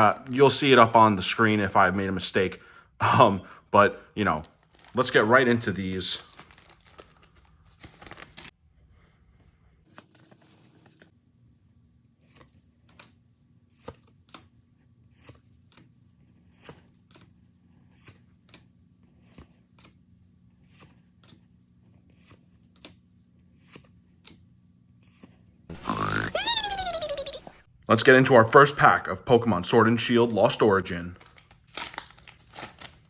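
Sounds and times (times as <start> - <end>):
card packs clicking and tapping: 0.0 - 0.6, 4.4 - 8.5, 31.2 - 33.0.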